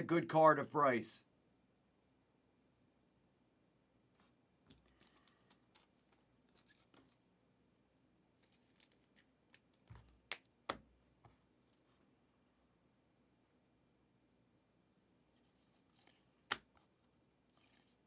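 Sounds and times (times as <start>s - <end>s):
cards rustling: 4.7s - 7.2s, 8.4s - 10.4s.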